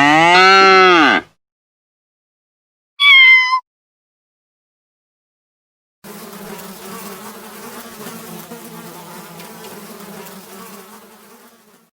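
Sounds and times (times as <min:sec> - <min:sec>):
insect wings buzzing: 0:06.1 - 0:11.9.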